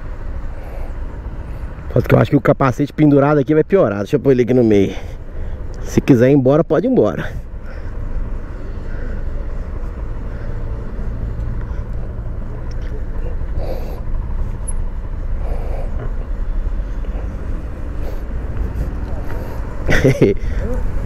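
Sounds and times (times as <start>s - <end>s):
hissing passing traffic or wind: 0.0s - 21.0s
motorcycle engine rumbling: 7.0s - 21.0s.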